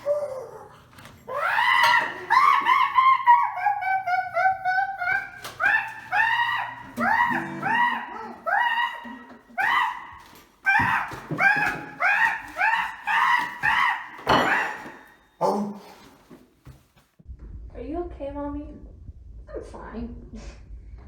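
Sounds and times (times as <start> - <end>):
ape-like hooting and screeching: 1.3 - 15.0.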